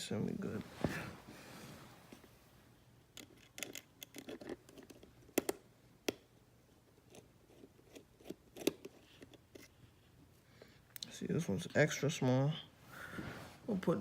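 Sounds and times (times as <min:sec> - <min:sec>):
tiny parts clicking and scraping: 0:03.1 - 0:05.6, 0:07.0 - 0:09.8.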